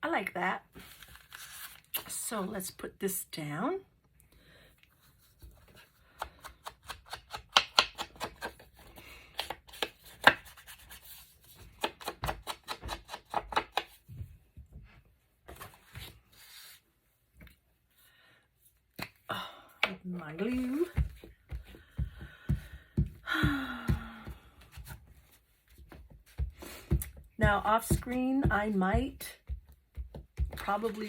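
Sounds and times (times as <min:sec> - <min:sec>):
paper scraping rustles: 0:00.8 - 0:01.9.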